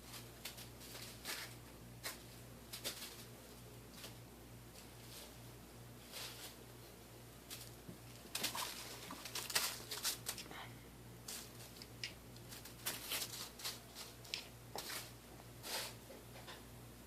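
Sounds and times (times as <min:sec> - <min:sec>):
bag rustling and crinkling: 0:07.5 - 0:10.5.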